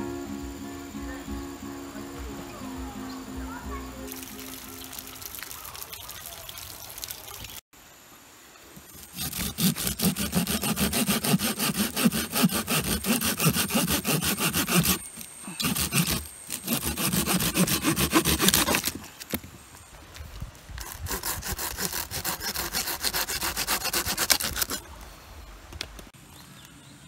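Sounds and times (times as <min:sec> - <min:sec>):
hand saw cutting wood: 0:09.0 - 0:19.1, 0:20.8 - 0:24.8.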